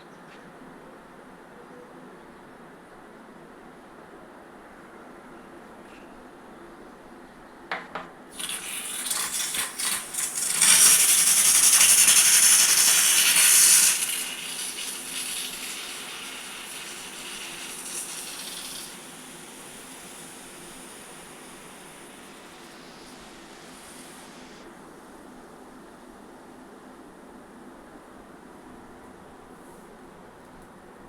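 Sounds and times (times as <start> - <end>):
pressure cooker hissing steam: 8.3 - 24.7.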